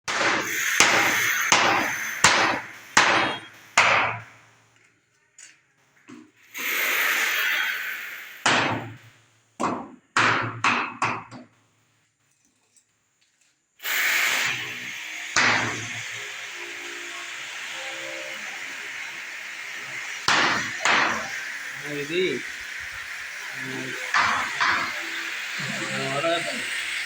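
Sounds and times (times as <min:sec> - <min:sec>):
hammer blows: 0:00.1 - 0:04.2, 0:08.4 - 0:09.0, 0:20.3 - 0:21.7, 0:24.1 - 0:25.0
hissing noise: 0:00.4 - 0:03.8, 0:06.4 - 0:08.9.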